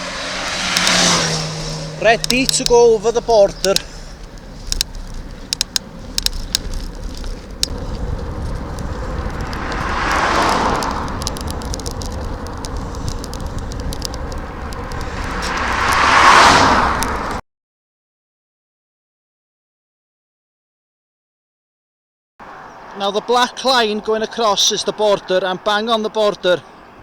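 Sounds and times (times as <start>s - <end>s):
road vehicles passing: 0.0s - 17.4s, 22.4s - 27.0s
light clicks: 0.4s - 17.4s
steady low rumble: 1.2s - 16.0s.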